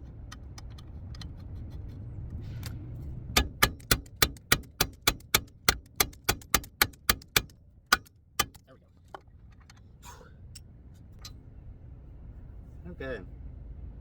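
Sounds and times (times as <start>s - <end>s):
low rumble: 0.0s - 4.2s
ratchet wrench clicking: 3.4s - 8.6s.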